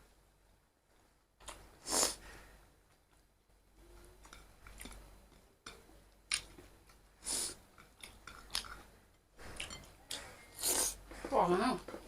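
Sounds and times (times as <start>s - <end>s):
person chewing food: 1.0s - 2.2s, 2.8s - 11.2s.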